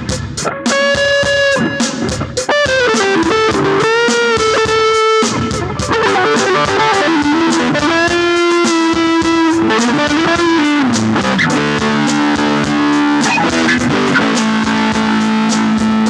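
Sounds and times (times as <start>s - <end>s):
electric guitar lead line: 0.0s - 16.0s.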